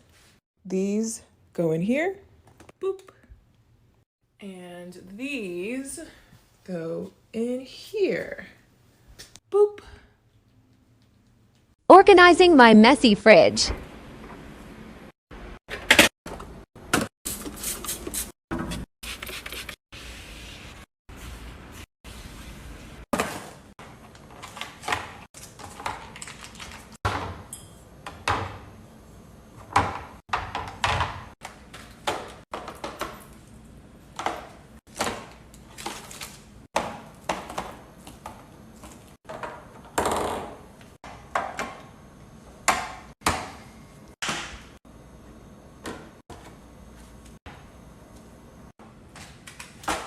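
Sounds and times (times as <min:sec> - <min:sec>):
food containers knocking and clattering: 0:29.6 - 0:33.4, 0:34.2 - 0:41.9.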